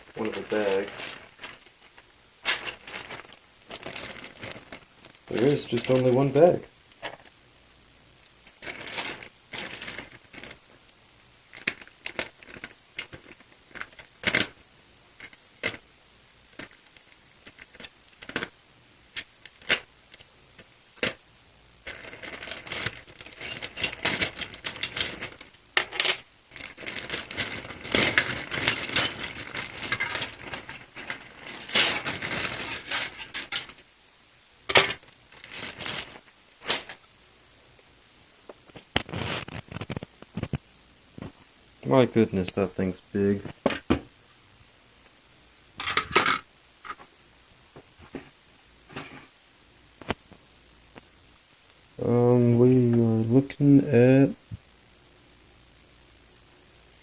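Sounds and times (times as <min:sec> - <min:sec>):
plastic bag crinkling: 0:00.0 - 0:07.3, 0:08.4 - 0:10.7, 0:11.5 - 0:14.6, 0:21.8 - 0:33.8, 0:34.7 - 0:37.0, 0:38.7 - 0:40.6.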